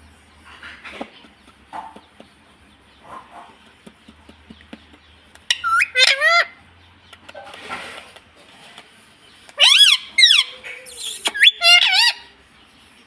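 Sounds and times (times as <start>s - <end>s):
parrot screeching: 5.5s - 6.6s, 9.6s - 12.3s.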